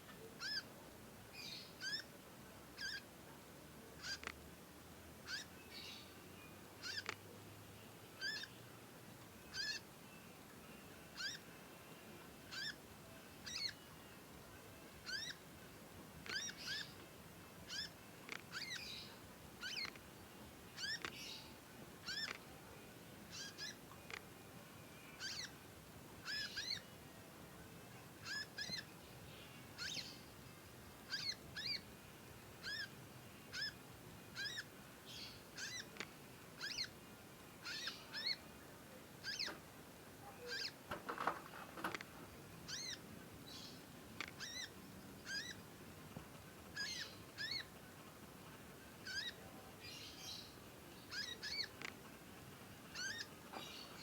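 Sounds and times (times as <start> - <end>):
cage bird chirping: 0.4 - 0.7, 1.3 - 2.1, 2.8 - 3.1, 4.0 - 4.4, 5.2 - 7.2, 7.8 - 8.7, 9.4 - 11.5, 12.5 - 12.8, 13.4 - 14.2, 15.0 - 15.4, 16.2 - 17.0, 17.6 - 20.0, 20.7 - 27.0, 27.9 - 30.5, 31.1 - 31.9, 32.6 - 37.0, 37.6 - 38.6, 39.2 - 45.8, 46.7 - 48.0, 48.9 - 54.0.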